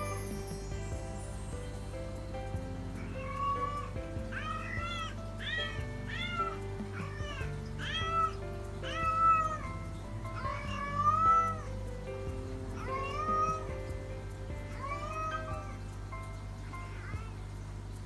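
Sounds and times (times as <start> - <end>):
background music: 0.0 - 18.0
cat meowing: 3.0 - 11.9, 12.8 - 14.0, 14.7 - 15.9, 16.6 - 17.4.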